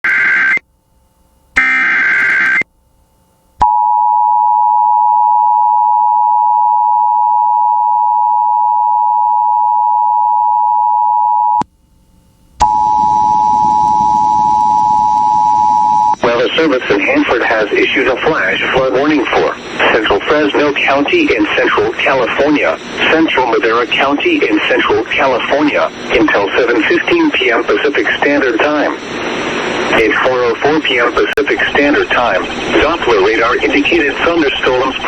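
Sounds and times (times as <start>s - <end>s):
static hiss: 11.8s - 35.0s
single steady tone: 12.6s - 16.2s
two-tone attention signal: 12.6s - 16.2s
screeching digital header burst: 29.9s - 35.0s.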